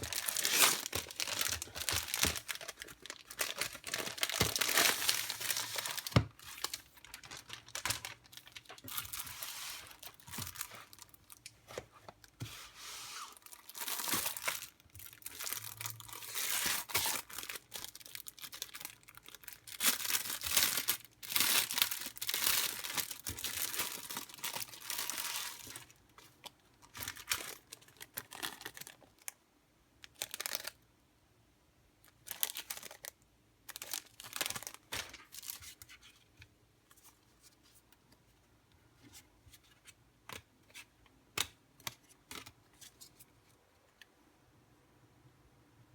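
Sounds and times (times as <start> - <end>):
packaging tearing and rustling: 0.0 - 11.5, 13.2 - 25.9.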